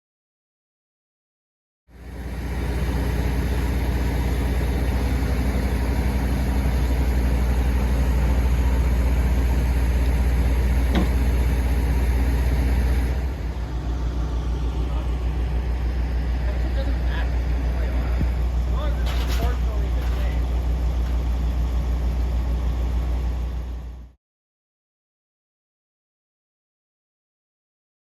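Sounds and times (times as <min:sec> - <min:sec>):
engine idling: 0:01.9 - 0:24.2.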